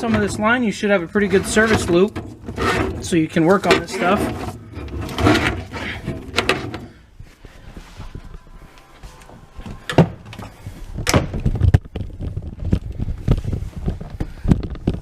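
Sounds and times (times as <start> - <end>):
dishwasher being handled: 0.0 - 0.6, 1.2 - 7.0.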